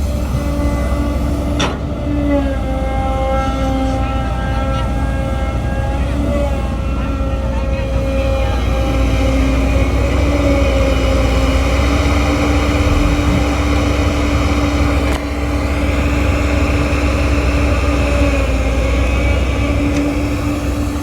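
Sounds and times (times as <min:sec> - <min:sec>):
heavy diesel engine rumbling: 0:00.0 - 0:21.0.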